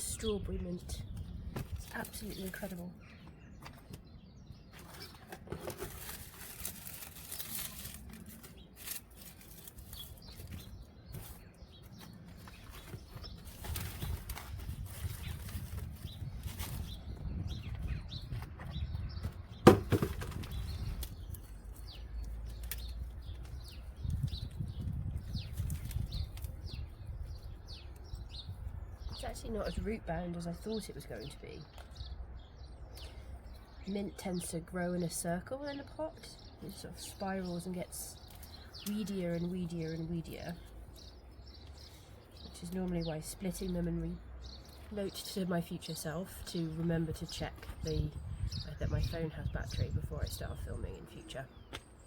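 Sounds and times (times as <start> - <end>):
rustling and handling noises: 1.1 - 29.8, 36.4 - 43.0.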